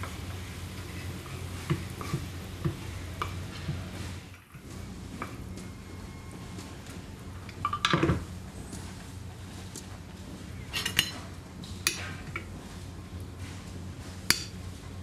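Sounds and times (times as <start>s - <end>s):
metal spoon scraping a pan: 0.8s - 2.3s, 10.7s - 12.5s.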